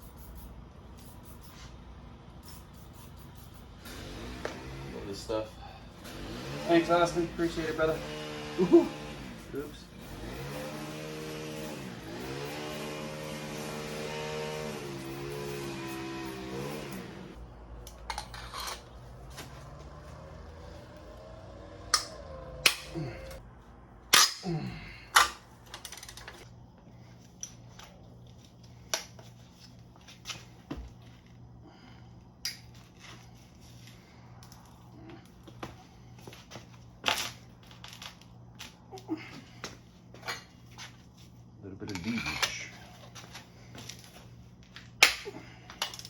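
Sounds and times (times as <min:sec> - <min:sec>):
hand tools clanking on metal: 0:41.8 - 0:43.0.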